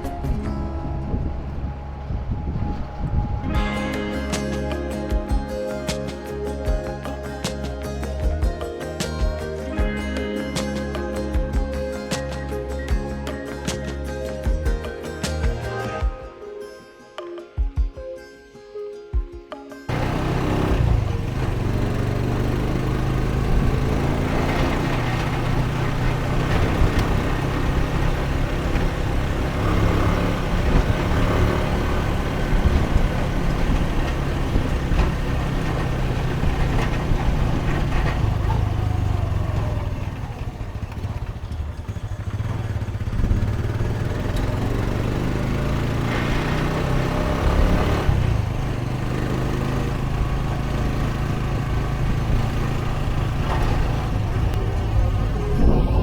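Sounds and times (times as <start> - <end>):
vehicle engine running: 19.9 - 56.0.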